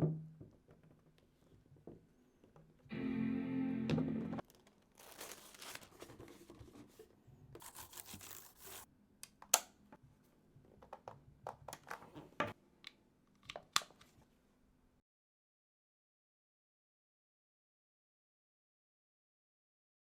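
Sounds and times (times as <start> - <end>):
paper tearing and rustling: 4.4 - 6.5, 7.6 - 8.9.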